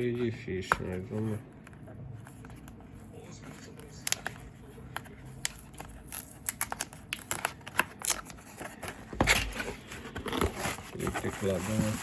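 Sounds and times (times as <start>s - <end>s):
packaging scrapes and crinkles: 5.9s - 12.0s.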